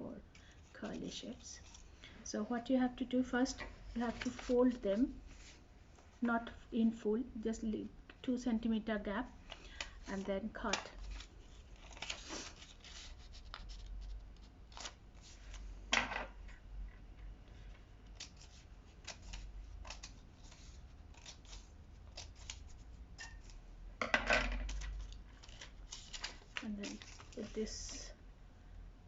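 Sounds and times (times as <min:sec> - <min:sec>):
paper handling: 0:04.0 - 0:04.8, 0:10.6 - 0:15.6, 0:24.7 - 0:28.0
scissors snipping paper: 0:18.1 - 0:23.6.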